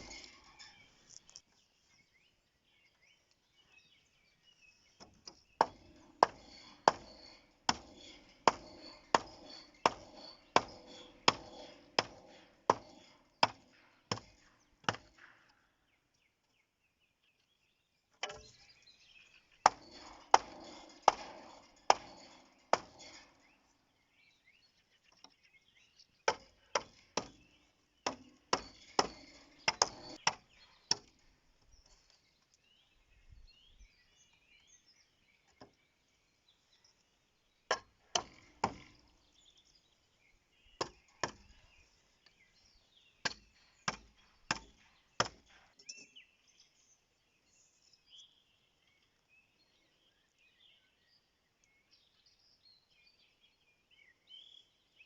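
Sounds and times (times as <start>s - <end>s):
tool striking wood: 5.0s - 15.4s, 18.2s - 18.6s, 19.6s - 23.2s, 26.3s - 31.2s, 37.7s - 39.0s, 40.8s - 41.6s, 43.2s - 45.7s.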